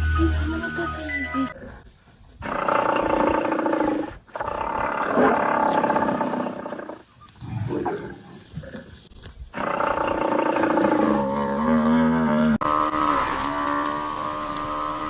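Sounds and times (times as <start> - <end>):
big cat roaring: 9.6 - 15.0.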